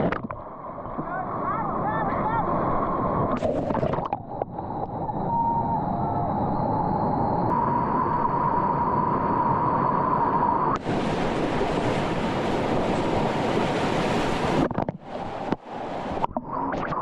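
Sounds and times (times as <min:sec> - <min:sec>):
wind on microphone: 0:01.0 - 0:17.0
whitewater rapids rushing: 0:10.8 - 0:16.3.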